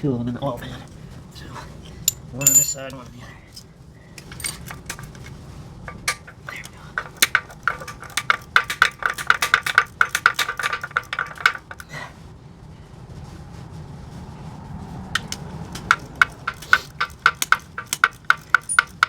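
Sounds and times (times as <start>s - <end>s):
knocks: 5.9s - 11.9s, 15.2s - 19.0s
ratchet wrench clicking: 5.9s - 11.9s, 15.2s - 19.0s.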